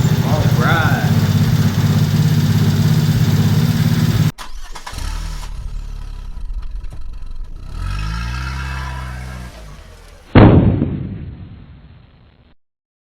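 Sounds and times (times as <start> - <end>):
engine running: 0.0 - 10.4
quieter engine rising in pitch: 0.0 - 10.4.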